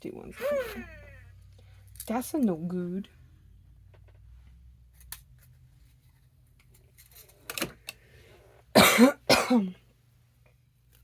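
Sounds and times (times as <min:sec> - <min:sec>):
person coughing: 0:08.8 - 0:09.8.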